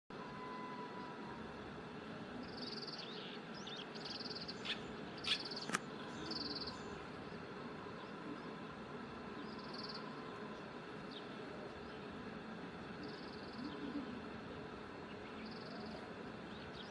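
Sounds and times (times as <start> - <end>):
finch trilled calls: 2.8 - 6.9.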